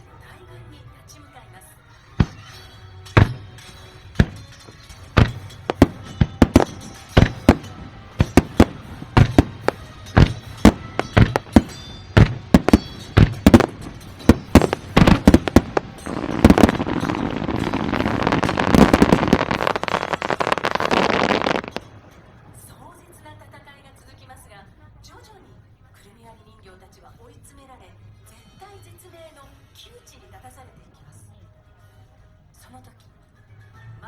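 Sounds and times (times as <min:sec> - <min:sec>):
faint music: 0:00.0 - 0:34.0
firework shells bursting: 0:02.0 - 0:24.2
crackling firework barrage: 0:02.0 - 0:24.3.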